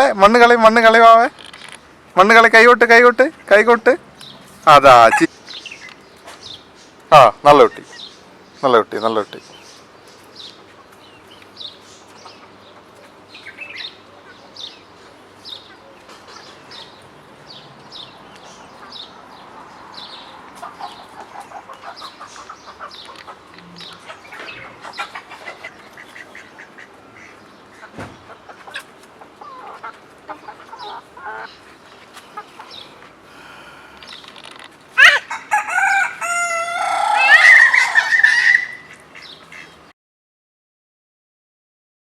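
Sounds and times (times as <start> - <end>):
fowl chirping: 4.8 - 5.9, 35.0 - 39.8.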